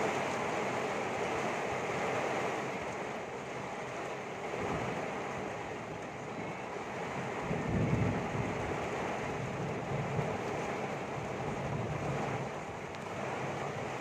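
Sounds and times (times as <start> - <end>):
storm wind on microphone: 4.3 - 14.0.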